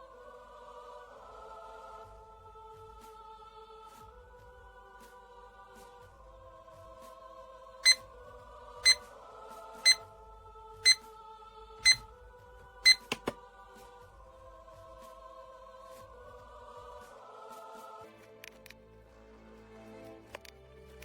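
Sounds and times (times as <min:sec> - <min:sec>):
alarm clock beeping: 0:12.9 - 0:13.4
sharp clicks: 0:12.9 - 0:13.4
soft background music: 0:13.7 - 0:21.0.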